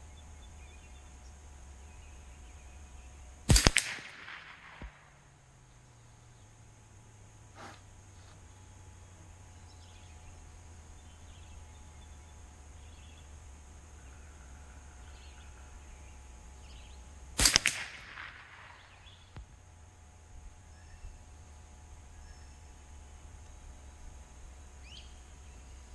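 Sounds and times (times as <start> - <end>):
faint rifle clicks: 3.5 - 5.2, 17.4 - 19.6
rifle shot: 3.5 - 5.4, 17.4 - 19.4.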